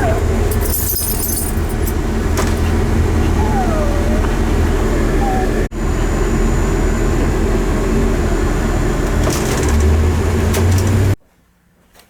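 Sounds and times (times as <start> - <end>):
deep rumble: 0.0 - 11.2
road and engine noise in truck cab: 0.0 - 11.2.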